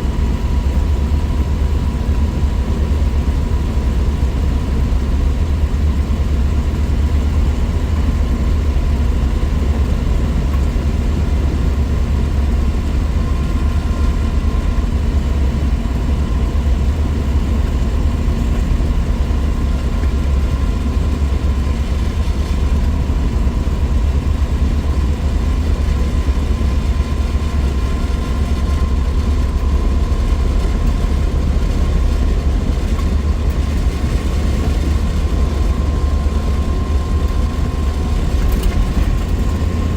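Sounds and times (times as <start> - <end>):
car engine and road drone: 0.0 - 39.9
faint steady whine: 0.0 - 39.9.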